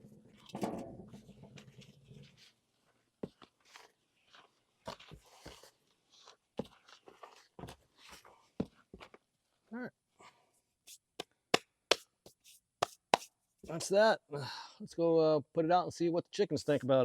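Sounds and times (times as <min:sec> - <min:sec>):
hands scraping dry dirt in tub: 0:11.9 - 0:13.9.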